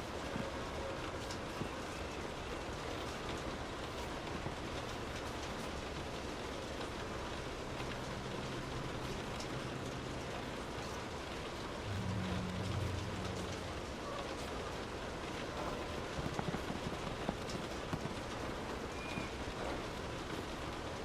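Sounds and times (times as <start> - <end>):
rain pattering on a car: 0.0 - 21.0
low rumble: 11.7 - 15.3.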